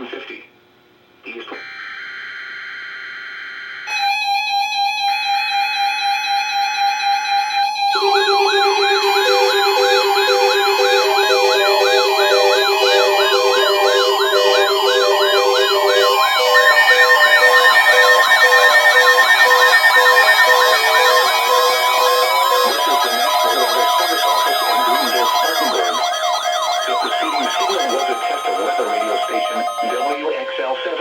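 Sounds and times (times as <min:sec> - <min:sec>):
warbling siren tones: 0:07.8 - 0:30.2
pulsing beep: 0:07.9 - 0:30.2
steady electronic alert tone: 0:07.9 - 0:30.2
buzzy digital burst: 0:08.0 - 0:30.2.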